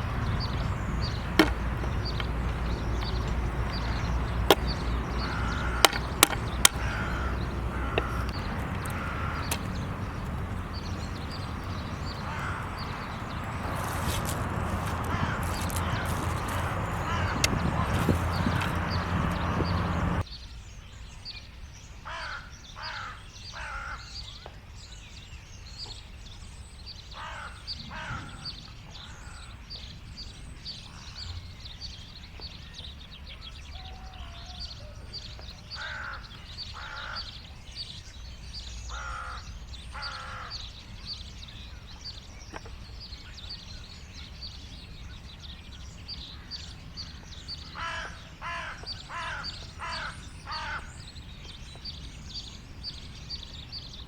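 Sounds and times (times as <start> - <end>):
crow cawing: 0.0 - 20.2, 22.1 - 24.2, 27.2 - 29.5, 35.8 - 37.4, 38.9 - 40.7, 47.7 - 51.0
low wind rumble: 0.0 - 20.2
small birds chirping: 0.0 - 21.9, 22.7 - 54.0.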